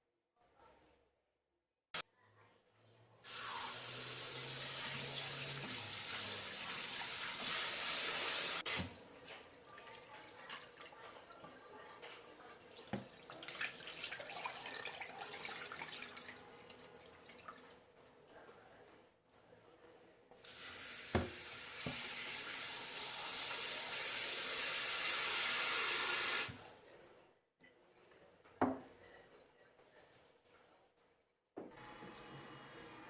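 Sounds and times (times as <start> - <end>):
splashing in sink: 12.6 - 18.1
knocks in sink: 21.1 - 22.1
tap running into sink: 21.1 - 22.2.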